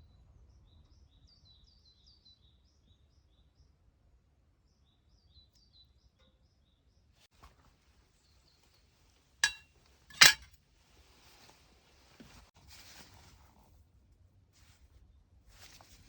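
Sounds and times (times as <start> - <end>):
metal tool clinking on hard surface: 9.4 - 10.5.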